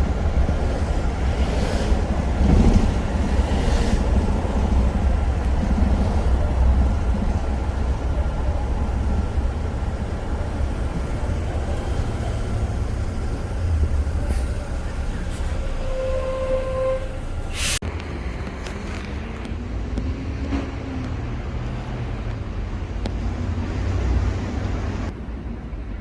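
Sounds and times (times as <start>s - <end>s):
bus engine and road rumble: 0.0s - 26.0s
brief air hisses: 17.5s - 17.8s.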